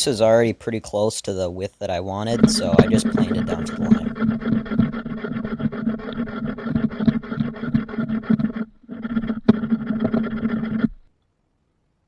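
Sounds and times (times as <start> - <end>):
hand plane scraping wood: 2.4 - 11.1.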